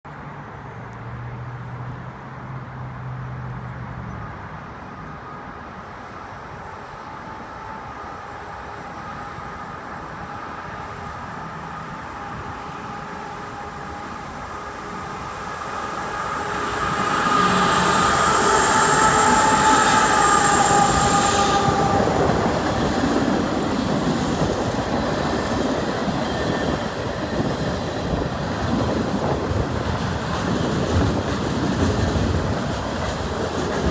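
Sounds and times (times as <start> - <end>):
freight train passing: 0.1 - 33.9
high steady squeal: 7.3 - 28.2.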